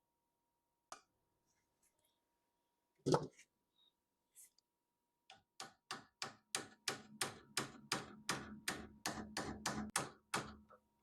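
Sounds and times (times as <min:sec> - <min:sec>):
hammer tapping: 0:05.3 - 0:10.6.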